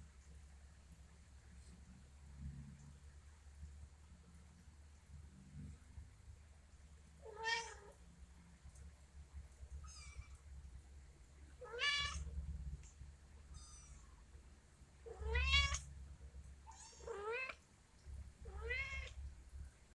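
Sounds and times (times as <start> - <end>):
kittens mewing: 15.1 - 15.8, 18.5 - 19.2.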